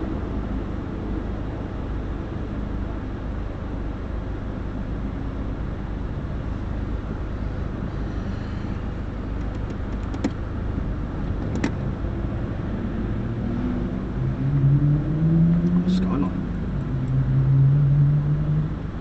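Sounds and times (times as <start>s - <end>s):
car engine and road rumble: 0.0s - 19.0s
sharp clicks: 9.4s - 10.4s.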